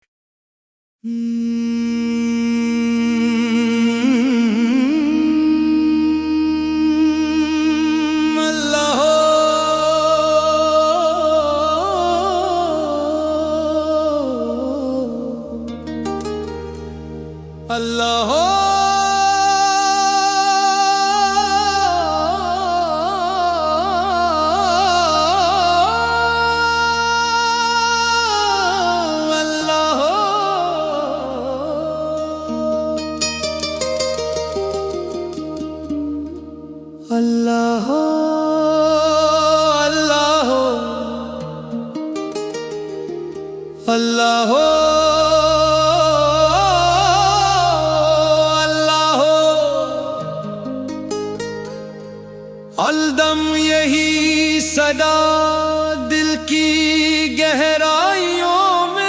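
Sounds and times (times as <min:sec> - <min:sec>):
person singing melisma: 0:01.0 - 0:59.0
steady drone: 0:44.5 - 0:51.0
long held melodic note: 0:44.5 - 0:51.5.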